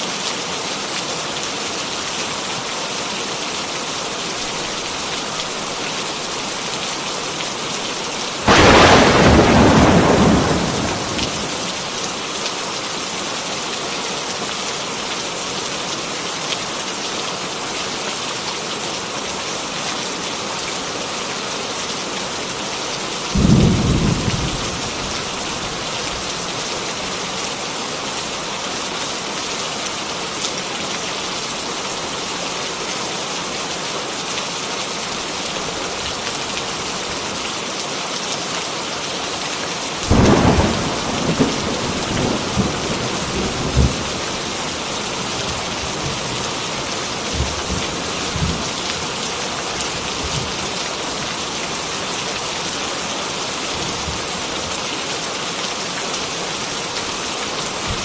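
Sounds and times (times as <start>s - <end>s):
heavy rain falling: 0.0s - 58.0s
thunderclap: 8.4s - 11.9s.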